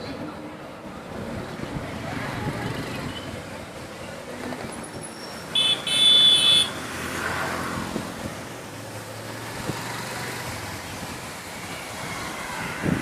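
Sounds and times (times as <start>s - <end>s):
motor vehicle running: 0.1s - 13.0s
vehicle horn: 5.5s - 6.8s.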